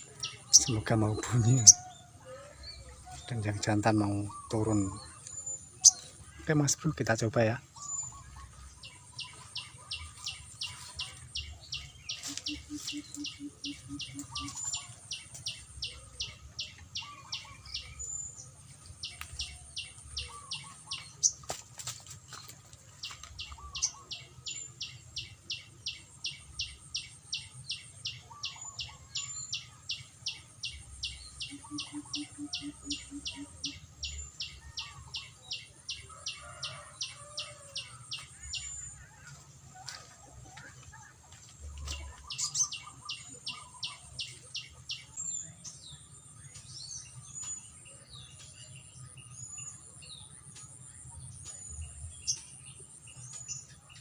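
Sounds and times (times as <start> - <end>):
bird chirps and warbling: 0.0 - 21.4, 23.1 - 54.0.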